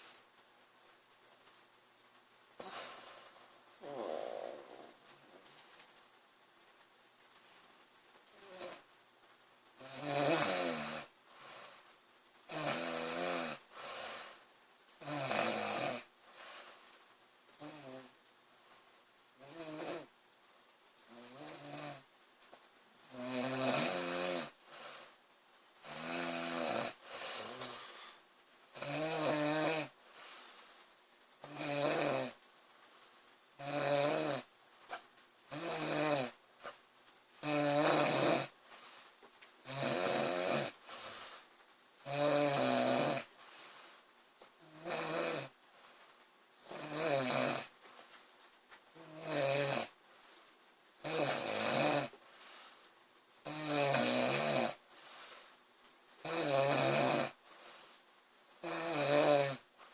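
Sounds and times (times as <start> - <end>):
faint breathing: 2.6 - 6.0, 11.2 - 12.0, 13.6 - 14.5, 16.2 - 18.1, 24.5 - 25.2, 26.9 - 28.4, 30.0 - 31.0, 38.6 - 39.4, 40.7 - 41.7, 43.2 - 44.2, 52.1 - 53.0, 54.8 - 55.6, 57.4 - 58.2
woman snoring loudly: 3.8 - 5.0, 9.8 - 11.1, 12.5 - 14.1, 15.0 - 16.1, 17.6 - 18.1, 19.4 - 20.1, 23.1 - 24.6, 25.8 - 27.8, 28.8 - 29.9, 31.4 - 32.4, 33.6 - 34.5, 35.5 - 36.4, 37.4 - 38.5, 39.6 - 40.8, 42.0 - 43.3, 44.6 - 45.5, 46.7 - 47.7, 49.0 - 50.0, 51.0 - 52.2, 53.4 - 54.8, 56.2 - 57.4, 58.6 - 59.6.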